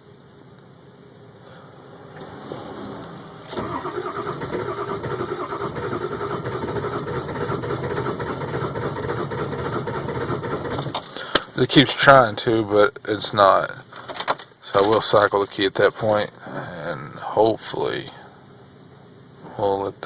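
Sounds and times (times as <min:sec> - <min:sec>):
diesel engine cranking on starter: 0:02.0 - 0:11.5.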